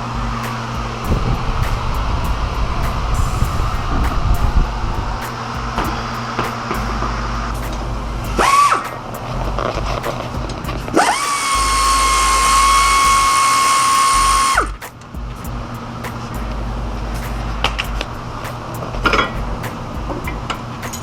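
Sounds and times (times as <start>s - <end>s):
power tool whining: 10.9s - 14.8s.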